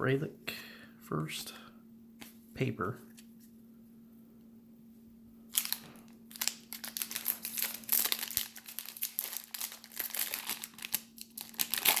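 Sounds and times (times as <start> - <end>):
faint electrical hum: 0.0 - 12.0
plastic packaging crinkling: 5.5 - 12.0.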